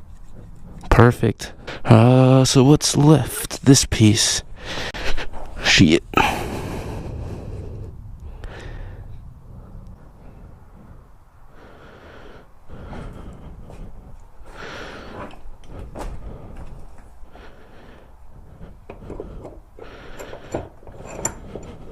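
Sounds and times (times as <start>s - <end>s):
man breathing with sighs: 4.6s - 21.9s.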